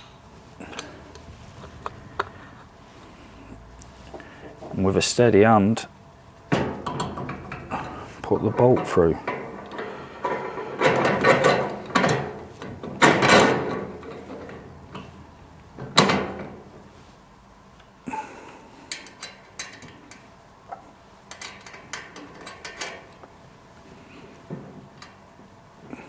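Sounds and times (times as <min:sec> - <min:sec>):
steel bolt scraping and clanking: 0:06.6 - 0:15.1, 0:21.3 - 0:23.2.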